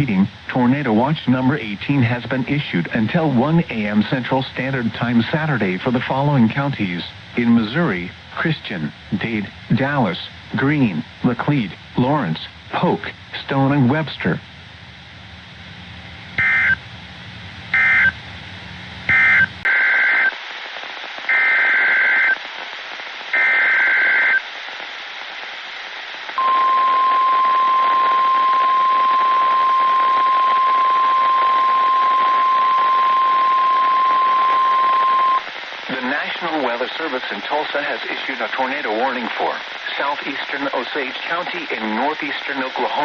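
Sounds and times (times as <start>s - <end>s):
steady warning alarm tone: 16.4s - 16.8s, 17.8s - 18.1s, 26.4s - 35.4s.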